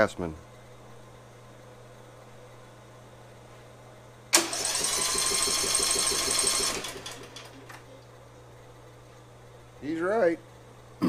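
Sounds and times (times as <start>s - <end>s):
electric starter spinning engine: 4.4s - 7.9s.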